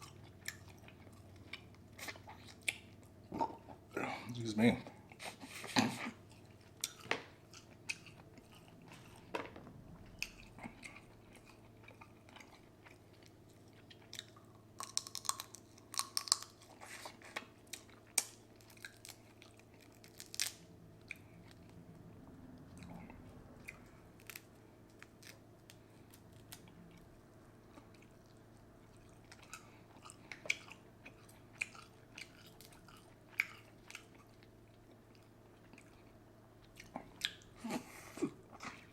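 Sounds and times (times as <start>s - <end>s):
person chewing and biting: 10.1s - 21.7s, 27.7s - 37.5s.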